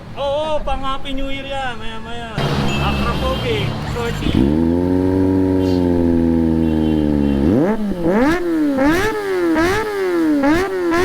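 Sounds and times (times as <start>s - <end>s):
motorcycle engine revving: 2.4s - 11.0s.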